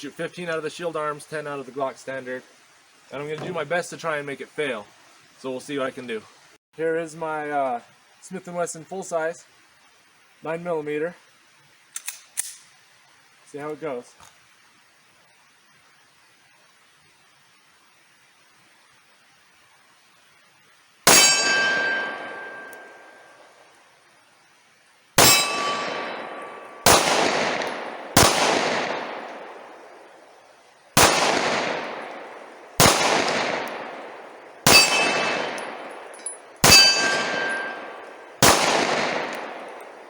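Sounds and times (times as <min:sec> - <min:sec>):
pistol shots with echoing decay: 0:21.1 - 0:23.4, 0:25.2 - 0:30.2, 0:31.0 - 0:40.0.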